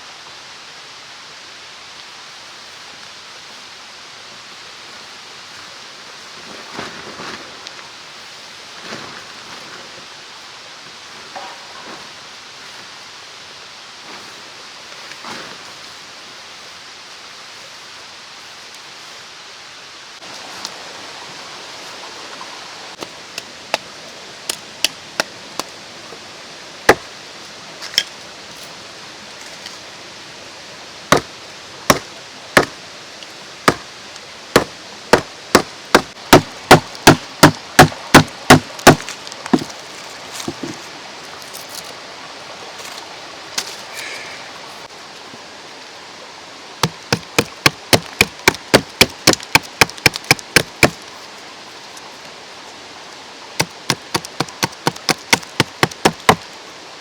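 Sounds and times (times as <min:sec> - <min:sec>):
mountain stream rushing: 0:00.0 - 0:57.0
sharp tool strikes: 0:46.8 - 0:51.0, 0:53.6 - 0:56.4.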